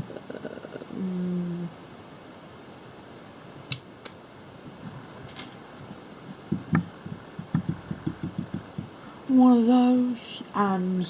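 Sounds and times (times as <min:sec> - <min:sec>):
person speaking: 0:00.0 - 0:01.8, 0:05.9 - 0:11.0.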